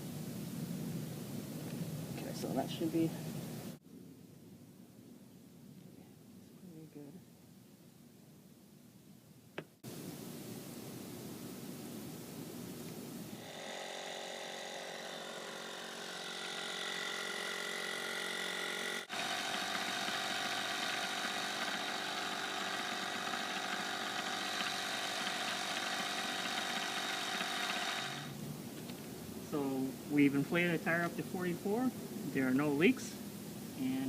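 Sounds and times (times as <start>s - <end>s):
soft air hiss: 0.0s - 14.4s, 28.2s - 34.0s
air compressor motor humming: 13.3s - 28.4s.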